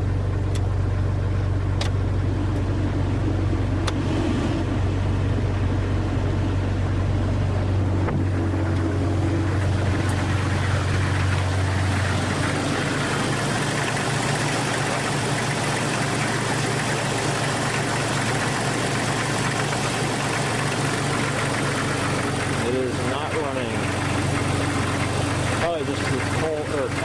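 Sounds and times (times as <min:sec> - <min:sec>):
car engine idling: 0:00.0 - 0:27.0
blower fan rushing air: 0:04.0 - 0:26.6.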